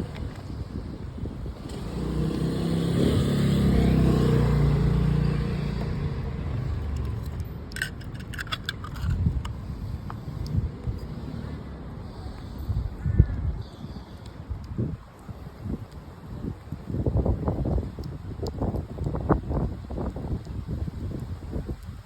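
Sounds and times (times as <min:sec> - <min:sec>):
car passing by: 0:01.6 - 0:07.0.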